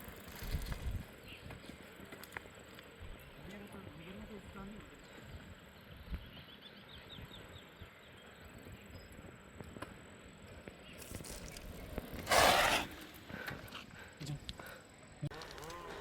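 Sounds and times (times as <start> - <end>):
loud burst of rustling: 12.2 - 13.1.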